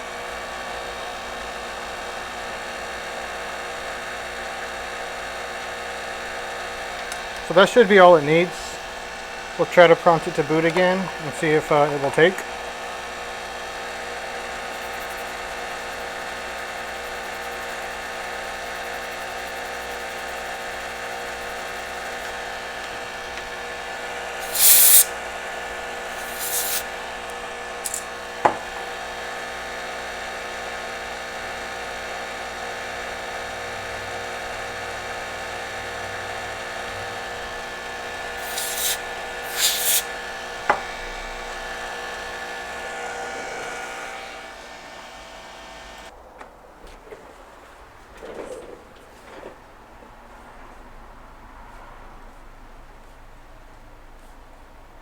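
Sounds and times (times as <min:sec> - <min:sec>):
small motor whirring: 0:00.0 - 0:46.1
short hissing bursts: 0:14.6 - 0:22.2, 0:24.4 - 0:25.2, 0:26.1 - 0:26.9, 0:38.3 - 0:40.2.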